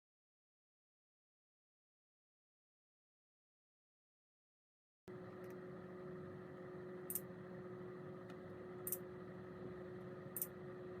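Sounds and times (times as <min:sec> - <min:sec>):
faint background hum: 0:05.1 - 0:11.0.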